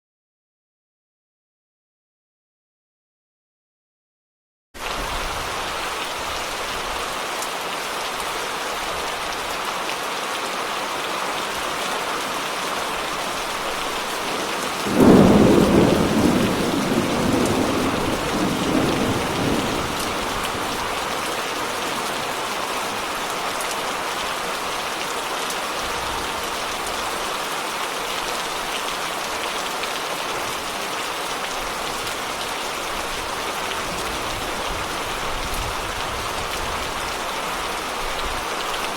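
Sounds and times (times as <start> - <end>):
steady rain: 4.8 - 38.9
rumbling thunderclap: 14.1 - 22.3.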